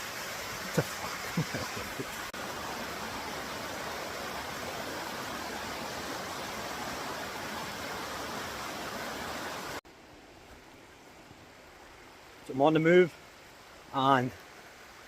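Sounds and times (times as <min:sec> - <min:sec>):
waterfall rushing: 0:00.0 - 0:09.8
quiet flow of water: 0:00.0 - 0:15.0.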